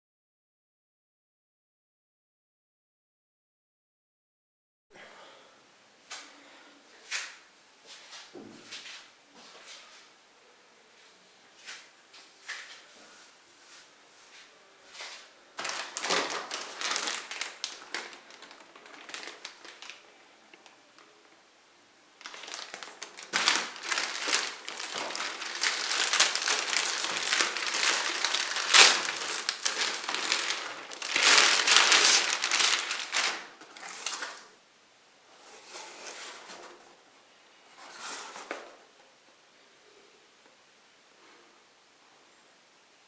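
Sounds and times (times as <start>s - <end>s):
plastic wrapping crinkling: 15.6s - 21.4s, 22.1s - 34.6s.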